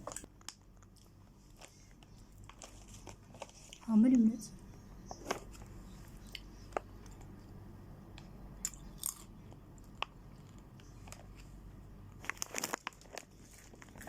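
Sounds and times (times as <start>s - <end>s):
person chewing crunchy snacks: 8.6s - 11.4s, 12.2s - 14.0s.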